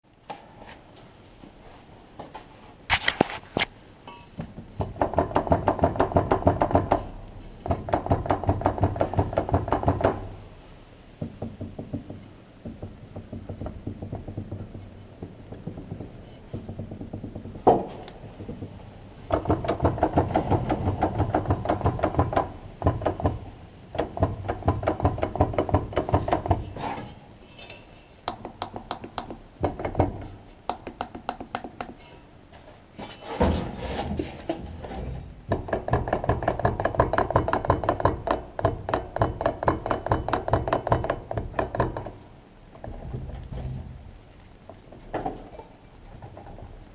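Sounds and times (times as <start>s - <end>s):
rapid drivetrain knocking: 11.2s - 17.8s, 18.4s - 26.6s, 35.5s - 42.2s.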